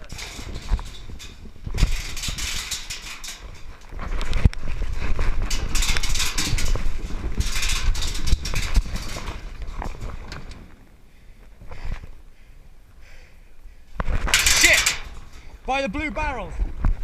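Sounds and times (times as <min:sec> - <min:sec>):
clothing and gear rustling: 0:00.1 - 0:12.2.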